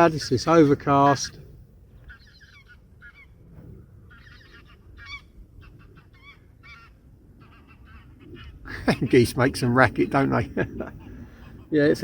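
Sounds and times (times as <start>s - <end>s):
geese honking: 4.1s - 10.3s.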